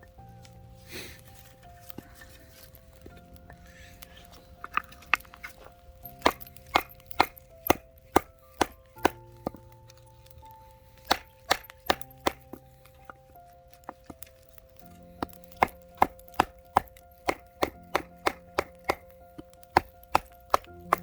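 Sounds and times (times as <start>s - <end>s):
background music: 0.0s - 21.0s
baton knocking on knife spine: 11.0s - 12.6s, 15.2s - 21.0s.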